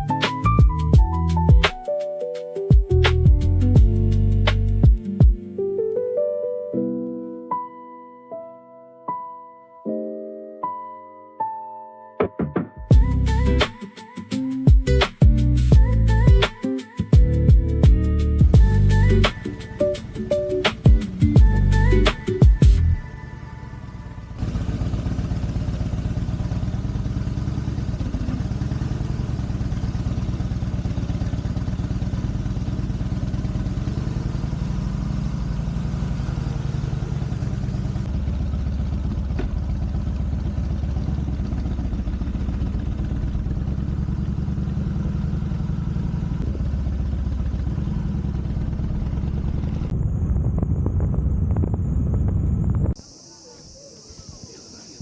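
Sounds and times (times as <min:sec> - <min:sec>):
motorcycle engine rumbling: 0:02.9 - 0:05.4, 0:12.9 - 0:13.6, 0:14.9 - 0:16.5, 0:17.1 - 0:55.0.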